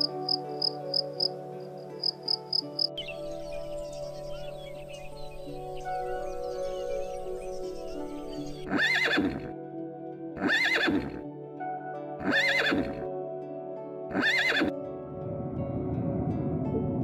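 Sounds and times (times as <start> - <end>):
background music: 0.0 - 17.0
horse whinnying: 8.6 - 9.5, 10.4 - 11.2, 12.2 - 13.1, 14.1 - 14.7.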